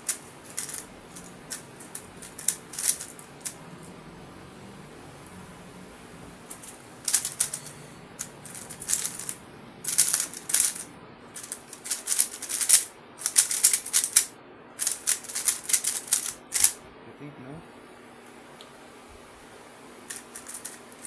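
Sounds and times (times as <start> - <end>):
plastic cube clacking: 0.0 - 3.6, 7.1 - 16.8.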